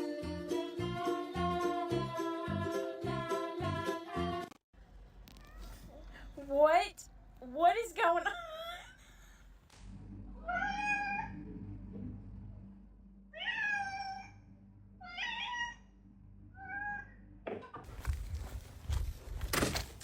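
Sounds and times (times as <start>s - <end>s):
cat meowing: 10.4s - 11.4s, 13.4s - 14.4s.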